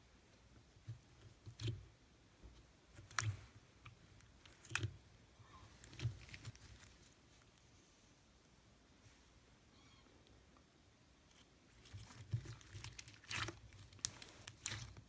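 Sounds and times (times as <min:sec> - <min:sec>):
slime crackling: 0:04.3 - 0:04.9, 0:11.7 - 0:15.0.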